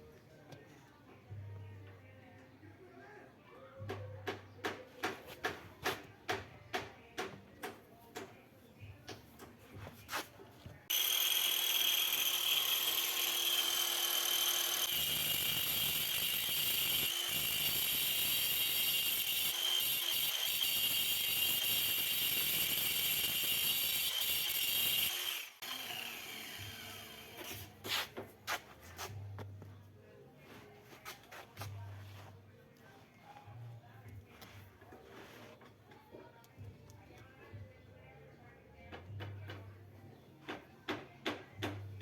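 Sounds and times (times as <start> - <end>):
angle grinder whining: 10.9 - 27.5
grinder disc spinning down: 10.9 - 27.5.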